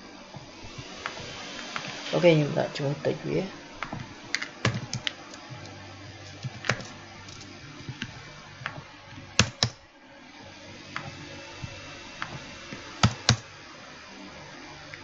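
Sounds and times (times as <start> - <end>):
keyboard key clicks: 9.4 - 9.8.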